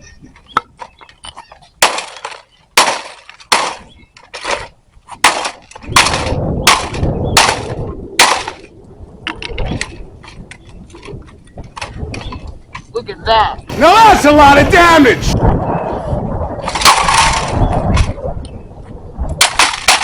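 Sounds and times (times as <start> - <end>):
broken pieces rattling: 16.6 - 17.6.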